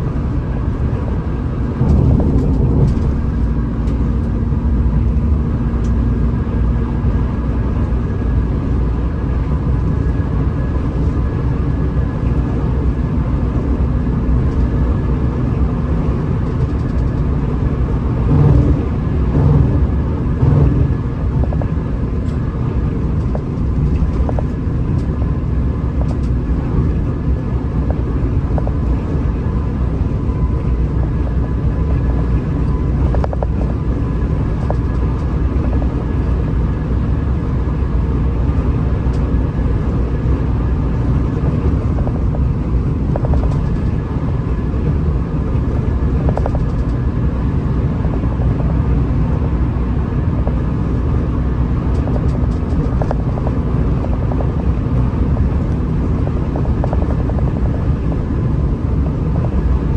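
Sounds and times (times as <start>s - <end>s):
bus engine and tyres rumbling: 0.0s - 59.9s
loud bumps: 1.8s - 4.1s, 18.0s - 22.0s.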